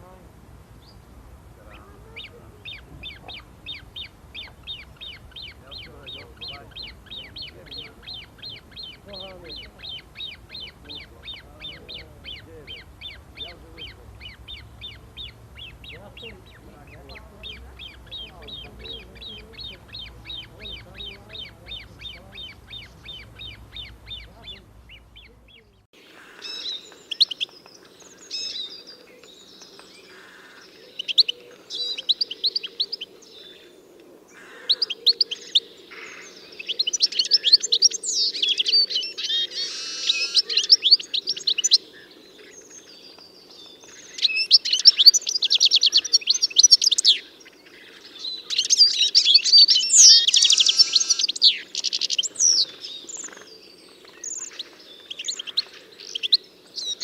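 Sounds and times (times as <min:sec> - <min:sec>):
faint low hum: 0:00.0 - 0:25.9
songbirds chirping and trilling: 0:00.0 - 0:57.0.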